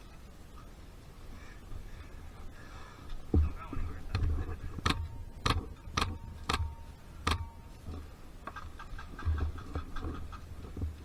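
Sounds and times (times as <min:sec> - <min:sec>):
low thuds: 0:03.2 - 0:11.0.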